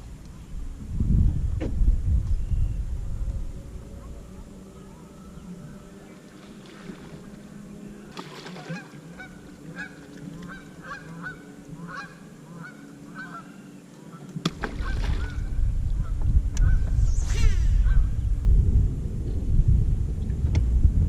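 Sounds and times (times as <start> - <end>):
geese honking: 4.0 - 15.5
loud low rumble: 15.4 - 21.0.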